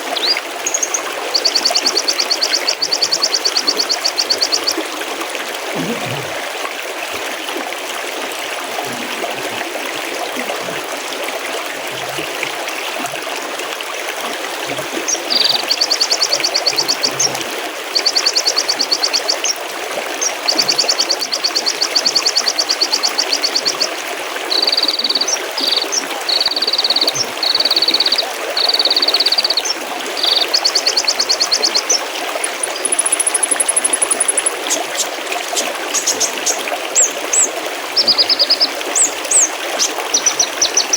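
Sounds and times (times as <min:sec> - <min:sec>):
stream babbling: 0:00.0 - 0:40.9
songbird trilling: 0:28.8 - 0:35.1.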